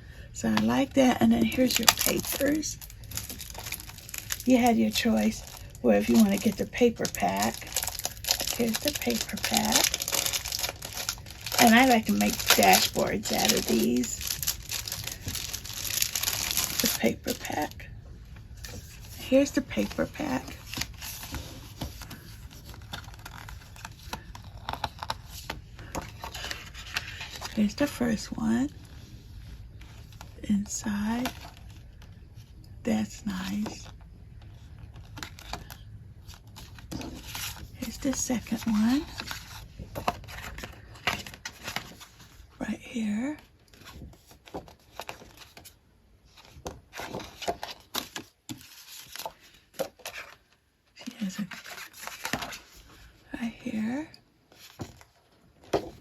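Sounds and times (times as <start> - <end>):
paper rustling: 1.3 - 17.6, 46.3 - 50.5, 51.2 - 53.1.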